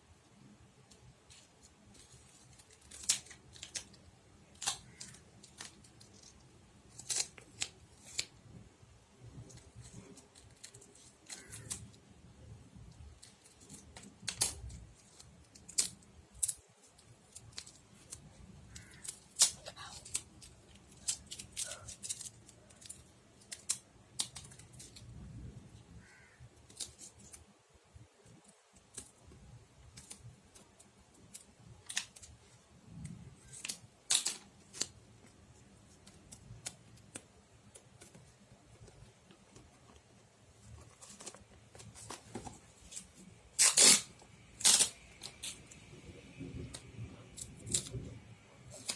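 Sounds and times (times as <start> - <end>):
scissors snipping: 10.6 - 11.9
handling rustles: 30.0 - 48.9.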